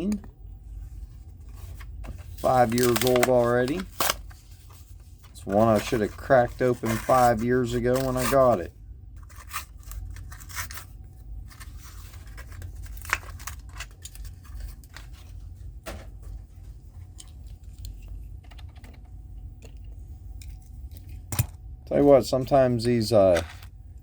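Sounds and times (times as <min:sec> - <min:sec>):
plastic and cardboard crinkling: 0:01.0 - 0:18.1.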